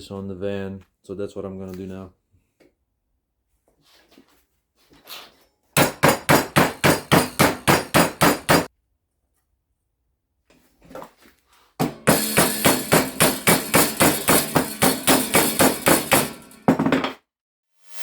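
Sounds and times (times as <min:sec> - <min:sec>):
hammer striking sheet metal: 0:05.8 - 0:08.7, 0:11.8 - 0:17.1.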